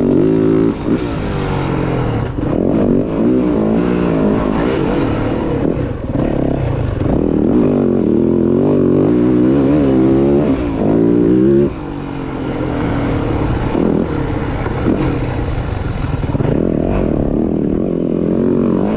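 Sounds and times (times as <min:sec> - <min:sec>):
dirt bike engine revving: 0:00.0 - 0:18.9.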